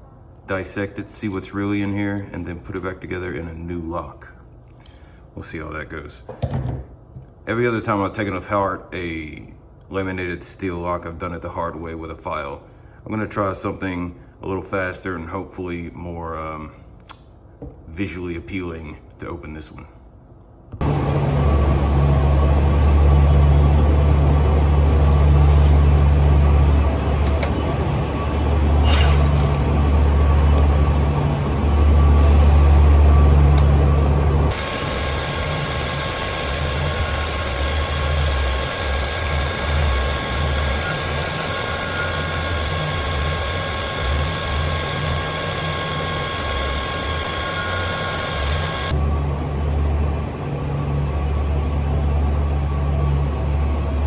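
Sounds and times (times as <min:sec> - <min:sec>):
electric power tool running: 0:20.8 - 0:49.0.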